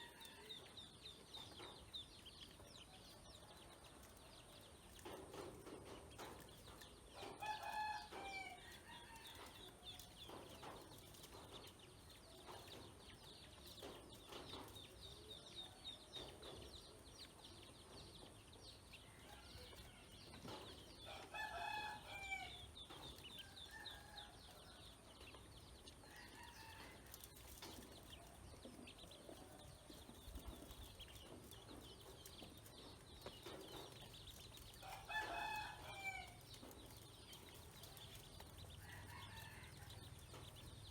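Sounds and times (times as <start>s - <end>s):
ducklings peeping: 0.1s - 8.4s, 25.1s - 40.9s
rooster crowing: 7.2s - 9.7s, 21.1s - 22.6s, 34.8s - 36.4s, 38.8s - 40.2s.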